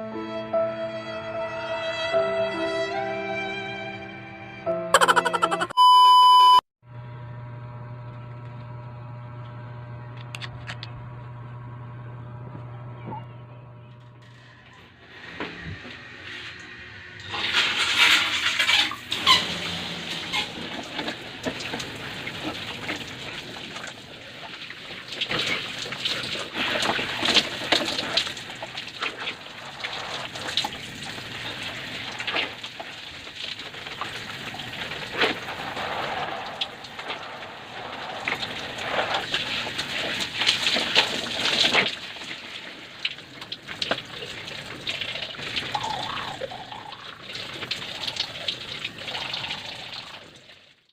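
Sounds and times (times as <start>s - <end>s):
water running and splashing: 17.8s - 50.8s.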